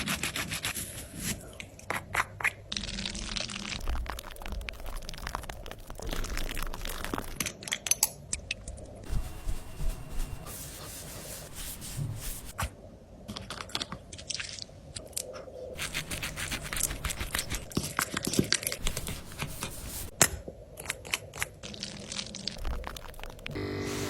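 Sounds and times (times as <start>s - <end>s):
handling crackle: 8.6s - 12.6s, 15.8s - 23.6s.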